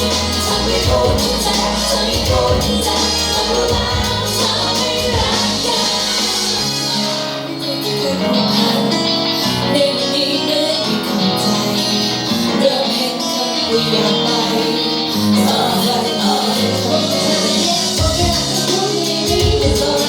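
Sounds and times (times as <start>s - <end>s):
bass line: 0.0s - 7.2s
guitar: 0.0s - 20.0s
person singing: 0.0s - 20.0s.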